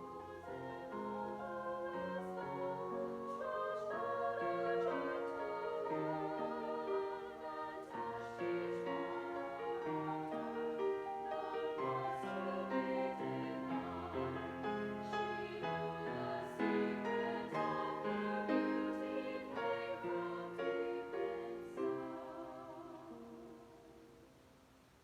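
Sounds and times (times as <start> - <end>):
choir singing in harmony: 0.0 - 24.4.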